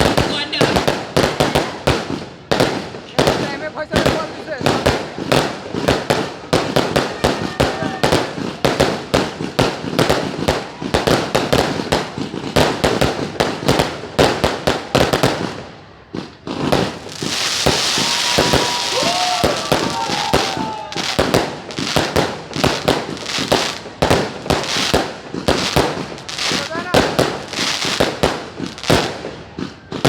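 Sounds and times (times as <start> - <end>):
firecracker cracks and bangs: 0.0 - 30.0
fireworks whistles: 16.5 - 30.0
fireworks hissing spray: 16.8 - 28.8.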